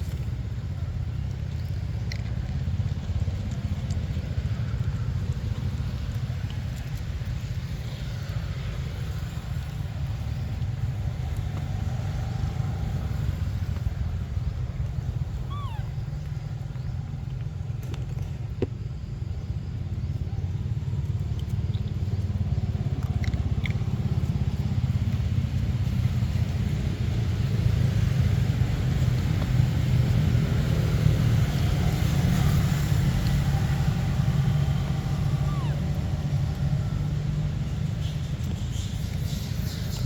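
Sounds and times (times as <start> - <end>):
steady low rumble: 0.0 - 40.0
faint high chirps and clicks: 14.8 - 18.3.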